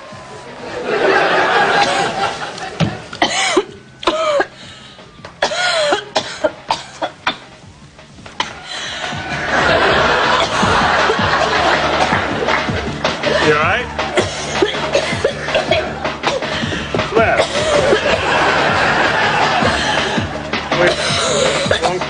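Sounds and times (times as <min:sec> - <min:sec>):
film soundtrack music: 0:00.0 - 0:22.0
woman coughing: 0:03.2 - 0:04.5, 0:14.2 - 0:16.5, 0:20.8 - 0:22.0.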